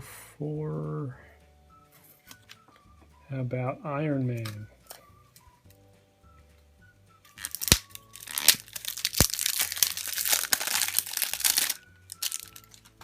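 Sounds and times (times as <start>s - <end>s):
foil wrapper crinkling: 7.3s - 13.0s.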